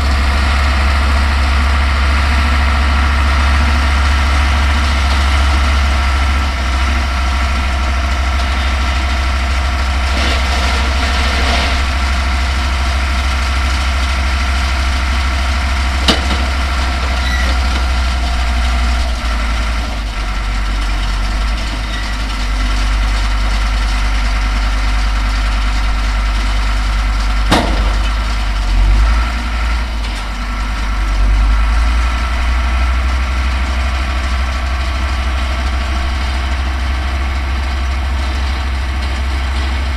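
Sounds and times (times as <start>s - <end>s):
tractor diesel engine under load: 0.0s - 39.9s.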